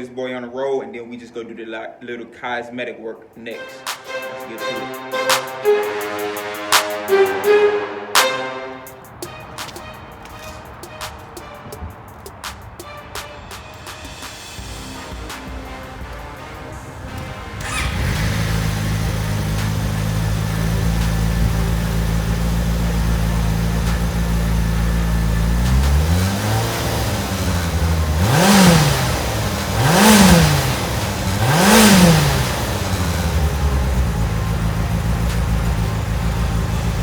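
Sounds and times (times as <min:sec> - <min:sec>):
motorcycle engine idling and revving: 0:17.2 - 0:37.0.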